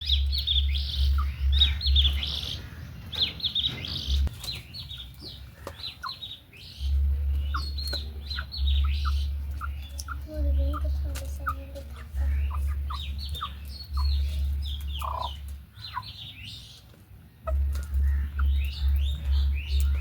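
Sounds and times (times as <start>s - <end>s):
low rumble: 0.0s - 4.6s, 6.7s - 16.0s, 17.4s - 20.0s
budgerigars chirping: 0.0s - 20.0s.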